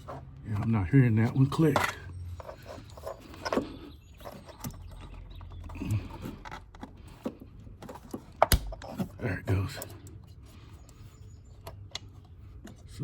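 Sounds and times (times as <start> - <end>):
plastic and metal clicks and knocks: 1.6 - 9.2.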